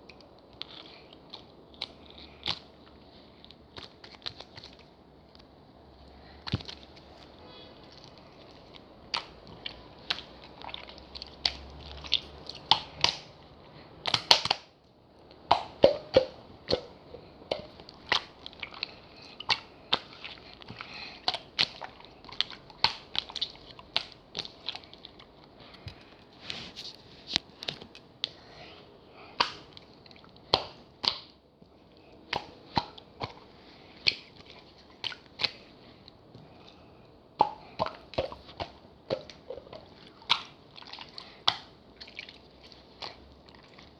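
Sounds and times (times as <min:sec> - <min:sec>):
slime sticky pops and clicks: 0:14.1 - 0:14.7, 0:30.5 - 0:31.3.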